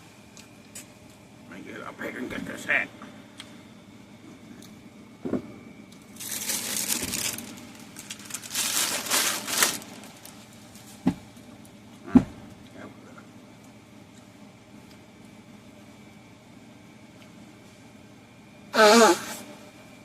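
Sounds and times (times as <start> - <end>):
wrapping crinkling: 6.1 - 11.0.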